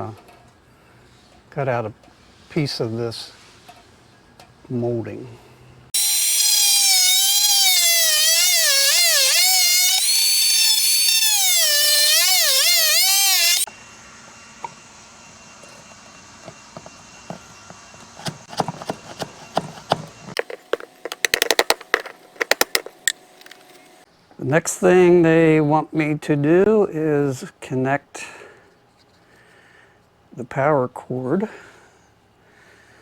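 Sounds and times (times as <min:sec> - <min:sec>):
power tool cutting wood: 0:06.0 - 0:13.7, 0:20.3 - 0:23.6
taps and scrapes: 0:16.4 - 0:23.8.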